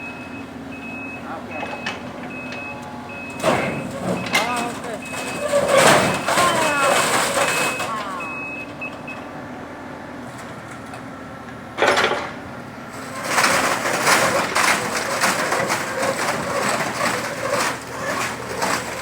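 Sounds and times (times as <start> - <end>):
small truck engine running: 0.0 - 19.0
loud clatter: 3.4 - 8.6, 11.8 - 19.0.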